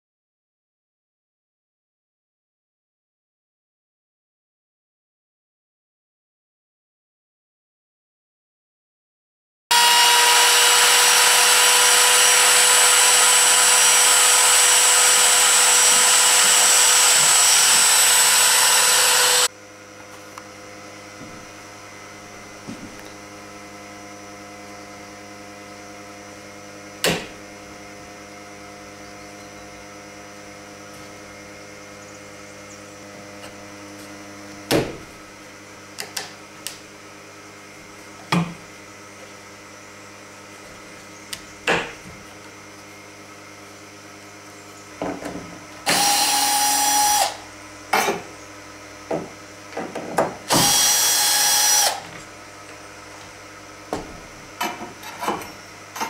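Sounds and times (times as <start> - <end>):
electric motor whining: 9.7 - 19.5, 45.8 - 47.5, 50.5 - 52.2.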